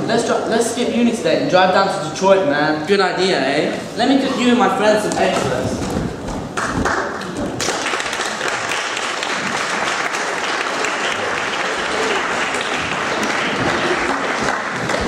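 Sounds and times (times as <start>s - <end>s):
audience applauding: 6.5s - 15.0s.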